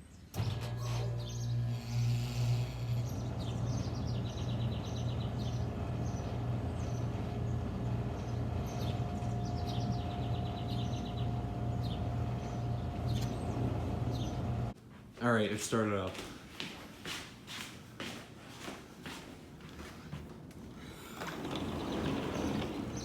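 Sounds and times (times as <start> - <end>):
condenser fan rushing: 0.3 - 14.8, 17.1 - 23.0
compressor hum: 0.3 - 15.2
birds chirping: 1.1 - 14.8, 20.7 - 23.0.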